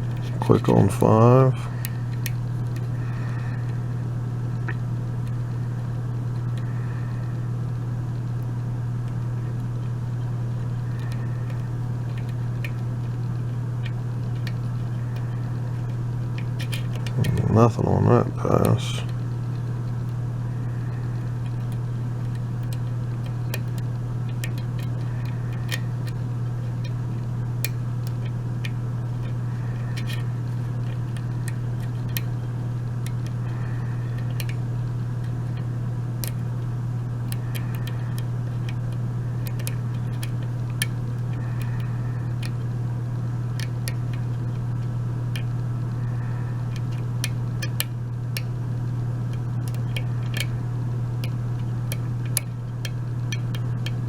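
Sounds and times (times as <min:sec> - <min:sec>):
steady low hum: 0:00.0 - 0:54.0
lock pick clicking: 0:13.8 - 0:17.4, 0:20.8 - 0:27.0, 0:27.6 - 0:32.4, 0:33.0 - 0:36.5, 0:37.2 - 0:42.7, 0:43.5 - 0:46.1, 0:46.7 - 0:48.6, 0:49.3 - 0:50.6, 0:51.2 - 0:54.0.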